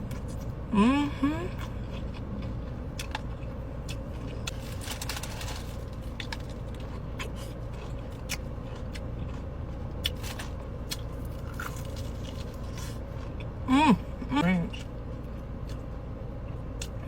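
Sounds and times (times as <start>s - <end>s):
low hum inside car: 0.0s - 17.0s
chewing crispy chicken: 1.5s - 13.6s.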